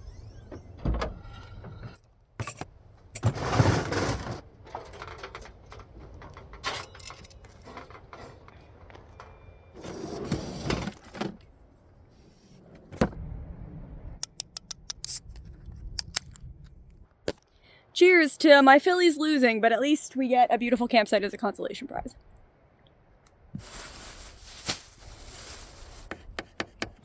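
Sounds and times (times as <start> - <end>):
metallic clinks and knocks: 4.7 - 8.2.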